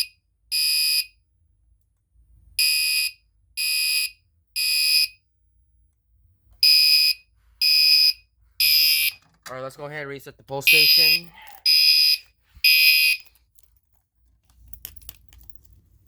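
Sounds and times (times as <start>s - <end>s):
fire alarm horn blasts: 0.0s - 1.2s, 2.6s - 5.2s, 6.6s - 9.2s, 10.7s - 13.2s.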